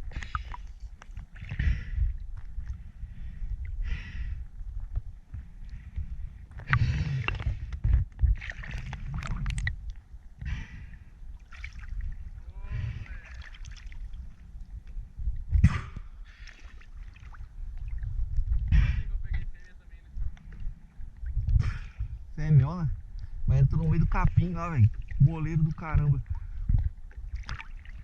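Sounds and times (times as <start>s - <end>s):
water splashing and gurgling: 0.0s - 3.6s, 6.2s - 14.7s, 15.5s - 18.7s, 24.7s - 28.0s.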